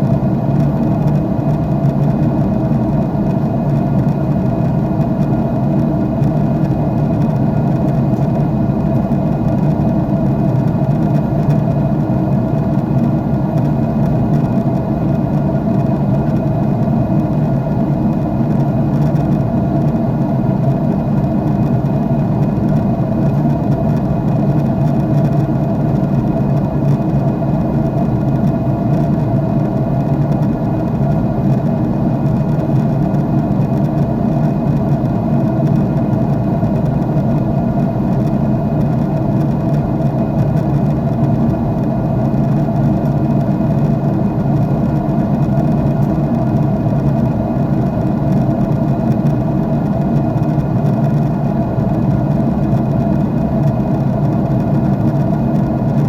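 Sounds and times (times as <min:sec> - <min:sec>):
jet engine drone in cabin: 0:00.0 - 0:56.0.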